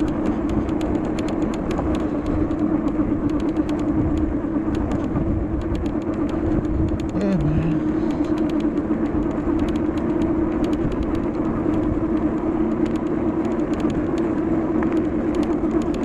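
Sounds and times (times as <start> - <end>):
vehicle low hum and rumble: 0.0 - 16.0.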